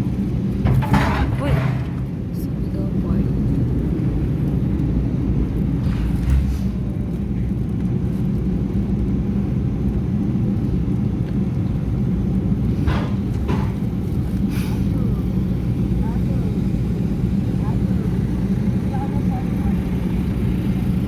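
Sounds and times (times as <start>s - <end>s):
engine rumbling: 0.0s - 21.0s.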